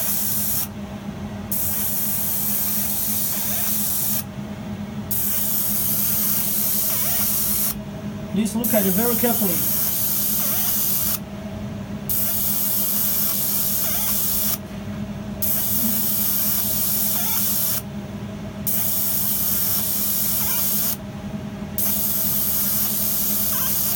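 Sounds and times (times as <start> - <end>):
laser engraver hiss: 0.0 - 0.7, 1.5 - 4.3, 5.1 - 7.8, 8.5 - 11.2, 12.1 - 14.6, 15.4 - 17.8, 18.7 - 21.0, 21.8 - 23.9
constant low hum: 0.0 - 23.9.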